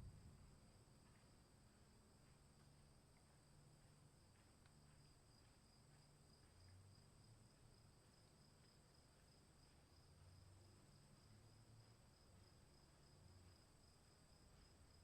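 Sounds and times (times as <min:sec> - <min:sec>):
faint low rumble: 0:00.0 - 0:15.0
crickets chirring: 0:00.2 - 0:15.0.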